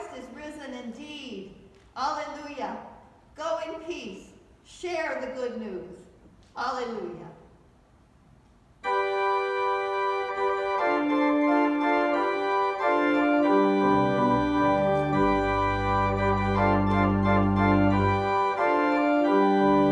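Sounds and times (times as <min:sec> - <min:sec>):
church organ chords: 0:08.8 - 0:19.9
deep organ pedal bass notes: 0:08.9 - 0:19.9.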